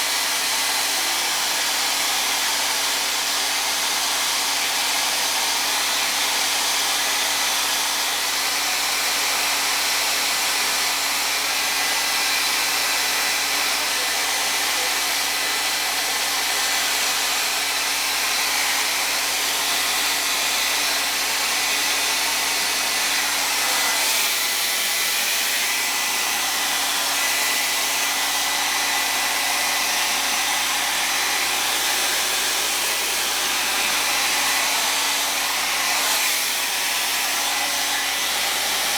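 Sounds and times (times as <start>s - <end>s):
hair dryer running: 0.0s - 38.9s.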